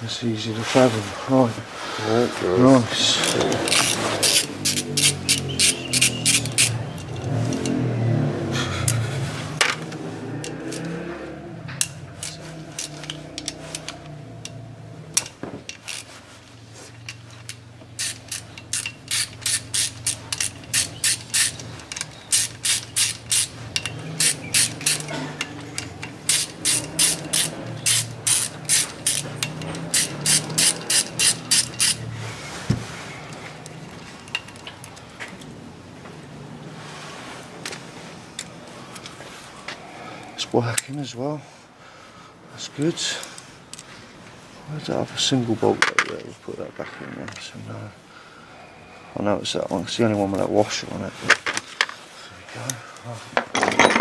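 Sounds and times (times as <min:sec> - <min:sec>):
socket ratchet clicking: 0:03.0 - 0:08.0, 0:08.9 - 0:35.4, 0:43.2 - 0:43.9.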